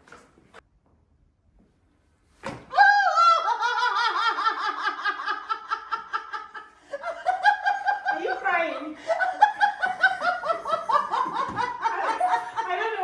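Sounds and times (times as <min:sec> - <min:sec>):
woman laughing high-pitched: 0:02.8 - 0:13.0.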